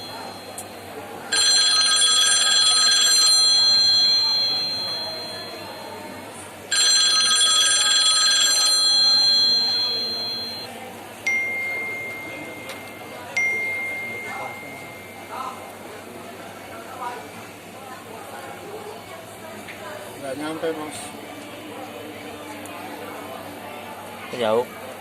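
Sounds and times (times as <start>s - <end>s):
telephone bell ringing: 0.0s - 10.7s, 11.3s - 15.7s.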